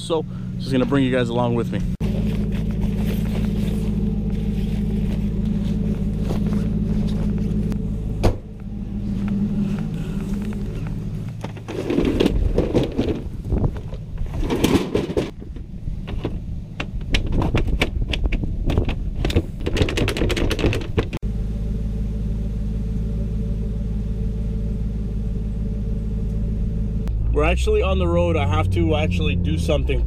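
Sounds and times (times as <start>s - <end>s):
car engine and road drone: 0.0s - 30.0s
knocking and rustling: 10.4s - 21.2s.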